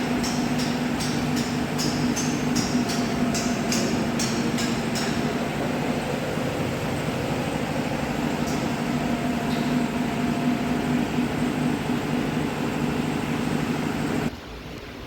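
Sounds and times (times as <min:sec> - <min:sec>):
mechanical hum with low drone: 0:00.0 - 0:15.0.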